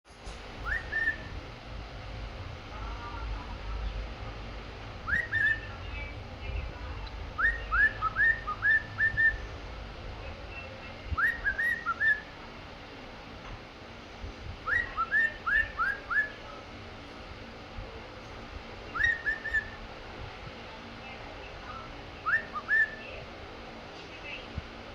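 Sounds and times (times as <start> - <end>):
cockatiel whistling: 0.6 - 1.4, 5.0 - 5.7, 7.4 - 9.5, 11.2 - 12.3, 14.6 - 16.5, 18.9 - 19.8, 22.2 - 23.2.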